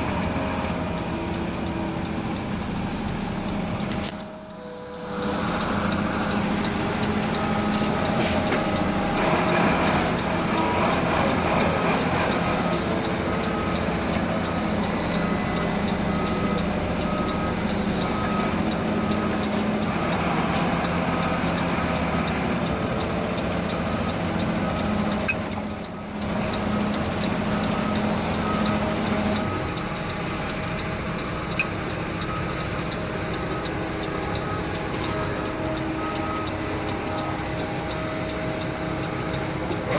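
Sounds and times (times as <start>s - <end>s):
heavy truck engine running: 0.0s - 39.9s
backup alarm beeping: 12.3s - 39.8s.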